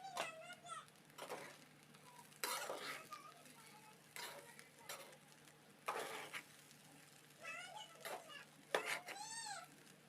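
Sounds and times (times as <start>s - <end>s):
faint sizzle: 0.0s - 10.0s
spatula scraping frying pan: 1.1s - 7.4s, 8.0s - 9.4s.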